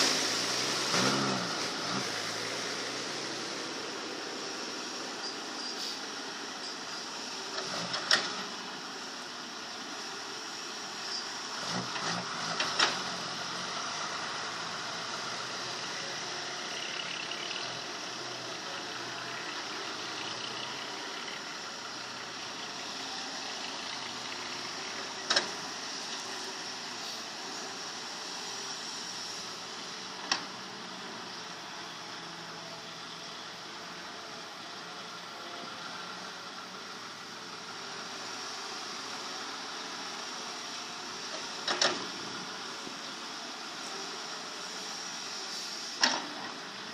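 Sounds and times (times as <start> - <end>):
excavator engine running: 0.3 - 46.9.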